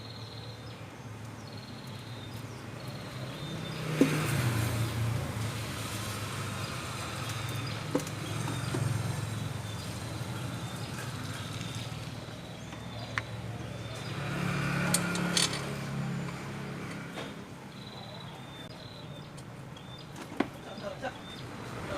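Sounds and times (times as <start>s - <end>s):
vehicle engine humming: 1.3s - 20.1s
sharp metallic clicks: 14.8s - 15.8s.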